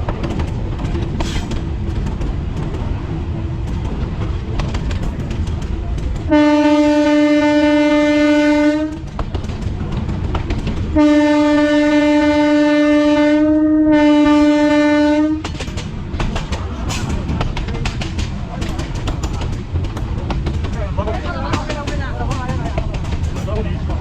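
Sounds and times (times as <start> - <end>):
wheels clattering over rail joints: 0.0 - 6.5, 8.5 - 11.2, 15.4 - 24.0
low rumble of moving train: 0.0 - 24.0
train horn blasts: 6.3 - 9.1, 11.0 - 15.5.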